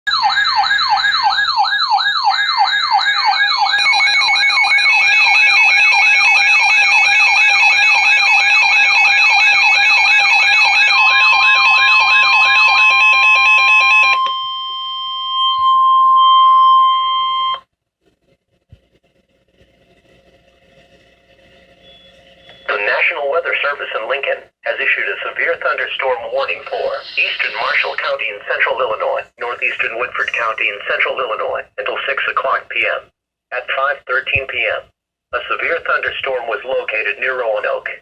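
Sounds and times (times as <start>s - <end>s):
siren-like electronic warble: 0.1s - 17.6s, 18.2s - 22.8s, 26.3s - 28.5s
steady alert tone: 19.0s - 22.9s, 25.9s - 29.1s
steady high beeps: 21.4s - 22.7s, 26.4s - 28.9s.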